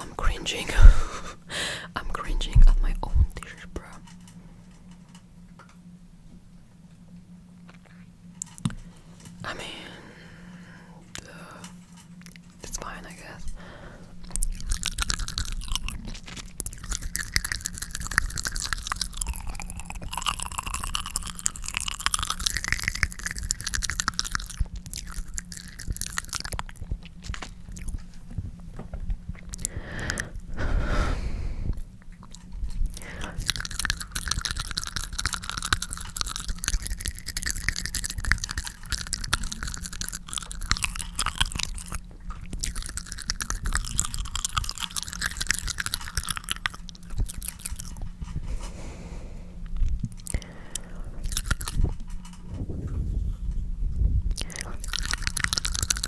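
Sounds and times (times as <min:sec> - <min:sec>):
wet tongue clicks and smacks: 0:14.2 - 0:28.1, 0:29.4 - 0:30.6, 0:31.7 - 0:48.4, 0:49.6 - 0:52.4, 0:54.3 - 0:56.0.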